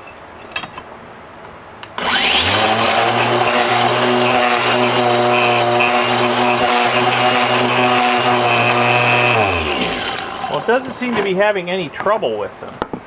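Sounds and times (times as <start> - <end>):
hammer mill running: 2.0 - 11.5.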